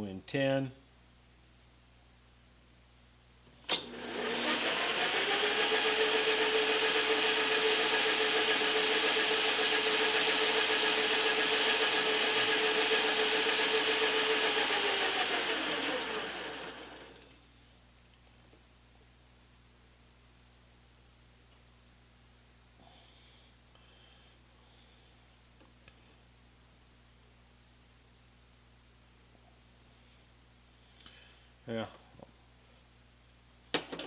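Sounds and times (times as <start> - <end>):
metal lathe running with hum: 3.8 - 17.4.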